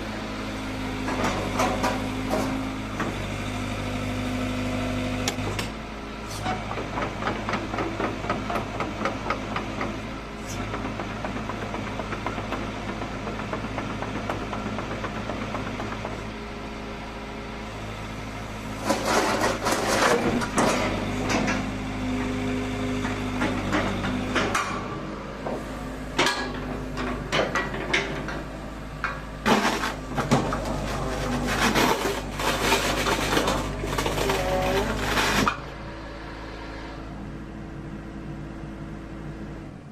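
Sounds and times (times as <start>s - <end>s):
excavator diesel engine running: 0.0s - 39.9s
metallic clanks and knocks: 23.0s - 25.6s, 26.2s - 30.9s.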